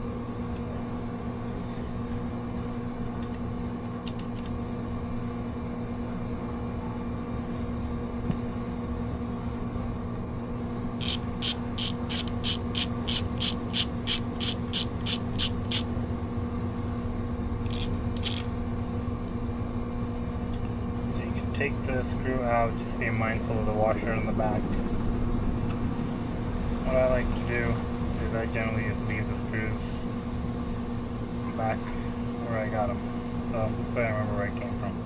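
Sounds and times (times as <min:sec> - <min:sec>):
steady low hum: 0:00.0 - 0:35.0
ratchet wrench clicking: 0:11.0 - 0:15.9, 0:17.6 - 0:18.5.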